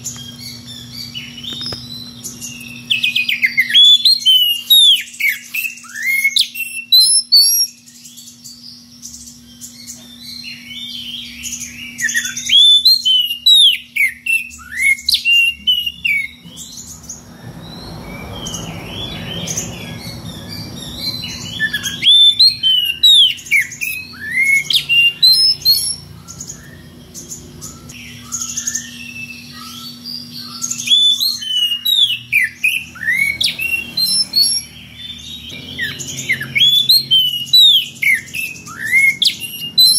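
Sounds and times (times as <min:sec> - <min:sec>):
songbird whistling and chattering: 0:00.0 - 0:39.9.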